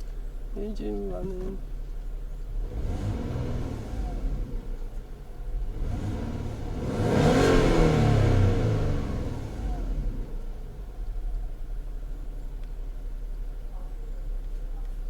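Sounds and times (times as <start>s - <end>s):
car engine revving: 2.4s - 11.9s.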